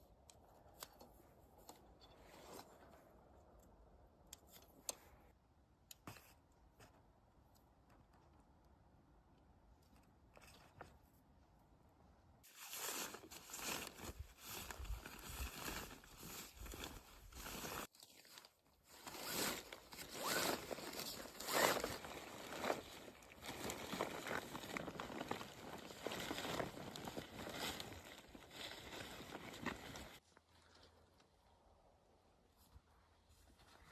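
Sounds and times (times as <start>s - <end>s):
crunching and rustling handling: 12.5s - 30.2s.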